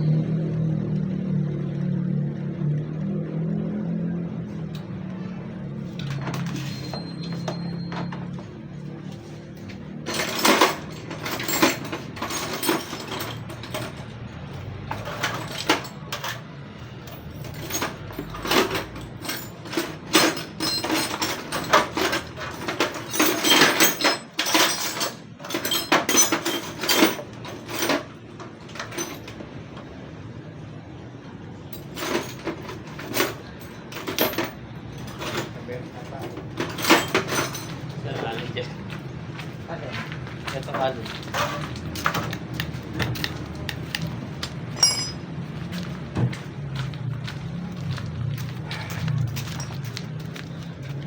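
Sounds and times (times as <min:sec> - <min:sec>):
metallic clicks taps and clanks: 0:41.2 - 0:45.2.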